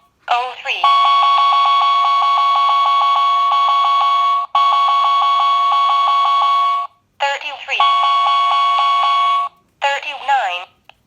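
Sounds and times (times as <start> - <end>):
two-tone electronic alarm beeping: 0.8 - 7.0, 7.8 - 9.6.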